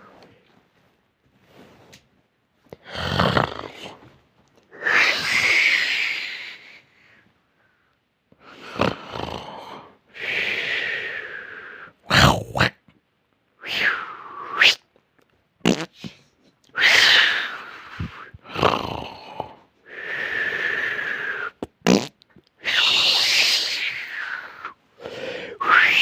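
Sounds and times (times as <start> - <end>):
person snoring loudly: 2.8 - 4.0, 8.6 - 9.9, 16.8 - 23.7
short sharp snorts: 15.6 - 17.4, 21.6 - 22.1.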